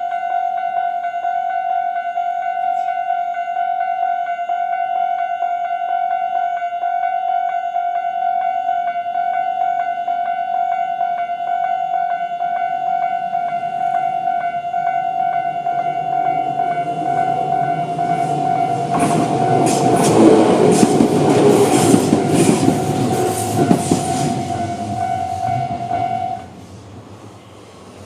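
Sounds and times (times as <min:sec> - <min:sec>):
level crossing warning bell: 0:00.0 - 0:26.5
electric train passing: 0:00.0 - 0:28.0
train wheels clicking over rail joints: 0:15.3 - 0:26.5.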